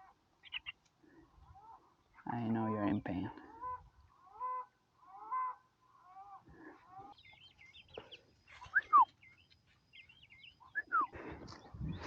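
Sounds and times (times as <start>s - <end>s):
chickens calling: 0.0s - 2.0s, 3.5s - 9.1s
chicks chirping: 0.4s - 0.8s.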